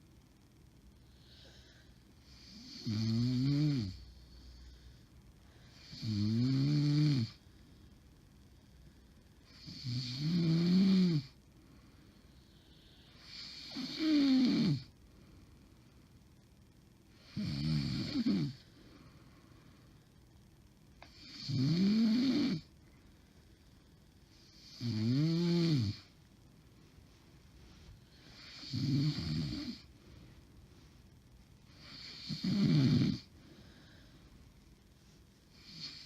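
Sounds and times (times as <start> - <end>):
woman snoring with moaning tone: 2.4 - 4.1, 5.7 - 7.4, 9.5 - 11.4, 13.1 - 14.9, 17.2 - 18.7, 21.2 - 22.7, 24.6 - 26.1, 28.4 - 29.9, 31.8 - 33.3.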